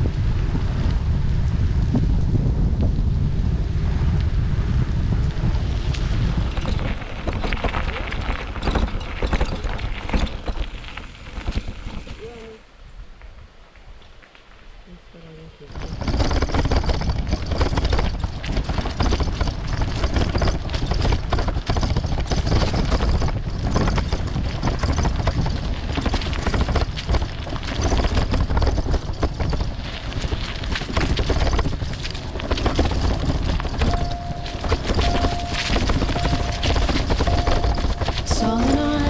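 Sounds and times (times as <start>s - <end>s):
wind buffeting microphone: 0.0s - 12.3s, 15.7s - 38.3s
bicycle rattling: 4.8s - 12.1s, 15.7s - 38.3s.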